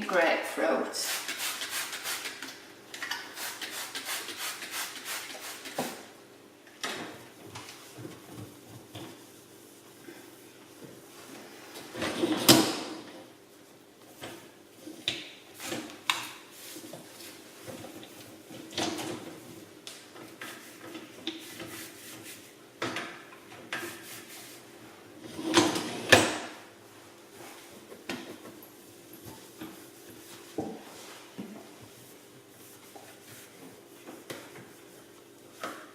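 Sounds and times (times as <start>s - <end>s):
water spray bursts: 1.0s - 2.4s.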